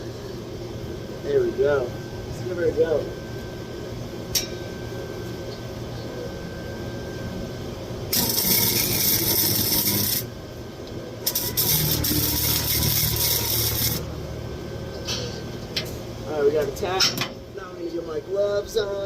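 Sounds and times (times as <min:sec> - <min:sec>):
welding arc crackling: 0:08.1 - 0:10.3, 0:11.2 - 0:14.1.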